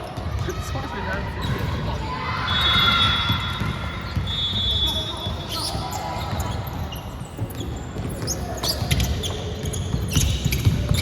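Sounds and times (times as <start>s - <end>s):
basketball bouncing on court floor: 5.8s - 11.0s.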